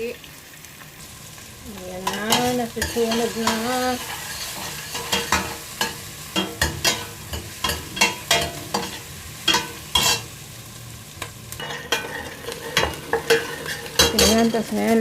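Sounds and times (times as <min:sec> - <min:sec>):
onion and garlic sizzling in oil: 0:00.0 - 0:15.0
spatula scraping a pan: 0:02.0 - 0:10.3, 0:11.6 - 0:14.7.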